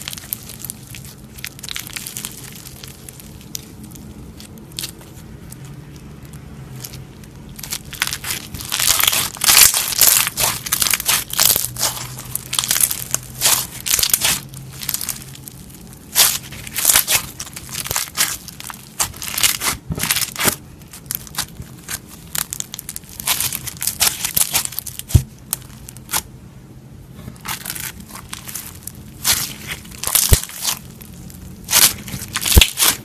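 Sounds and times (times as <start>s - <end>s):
slime crackling and popping: 0.0s - 26.3s, 27.4s - 33.0s.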